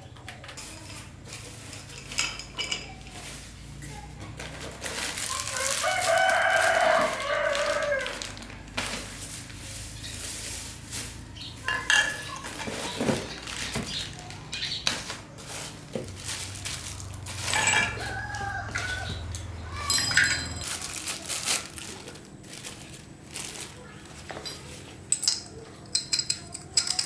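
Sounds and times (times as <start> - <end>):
rooster crowing: 5.3 - 8.5, 17.5 - 20.1
chickens clucking: 17.0 - 19.9.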